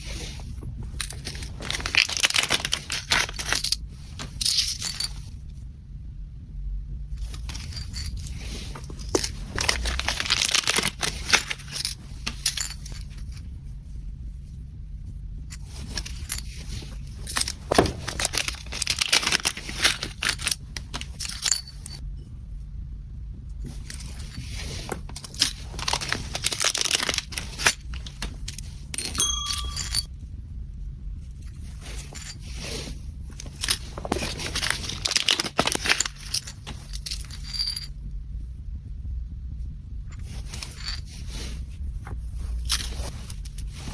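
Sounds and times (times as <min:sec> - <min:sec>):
low hum: 0:00.0 - 0:32.4
packaging crinkling and tearing: 0:09.4 - 0:11.8.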